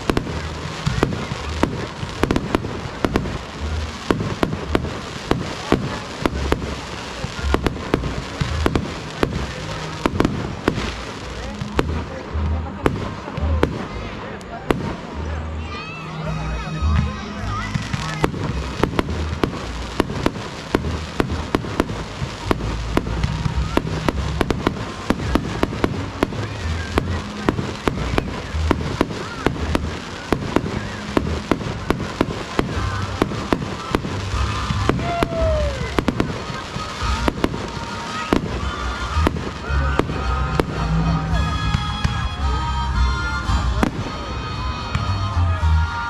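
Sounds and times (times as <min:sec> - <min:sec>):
fireworks bangs and cracks: 0:00.0 - 0:46.0
falling firework whistle: 0:22.5 - 0:46.0.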